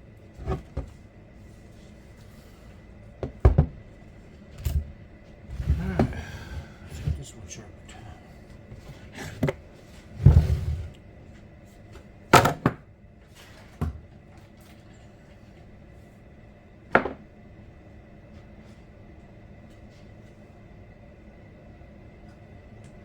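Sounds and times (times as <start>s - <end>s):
hard objects knocking and clunking: 3.2s - 3.8s, 9.2s - 9.6s.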